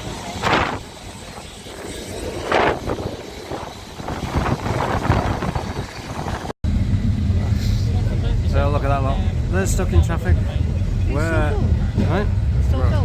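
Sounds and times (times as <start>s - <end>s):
wind buffeting microphone: 0.0s - 7.6s
boat tram ride rumble: 0.0s - 13.0s.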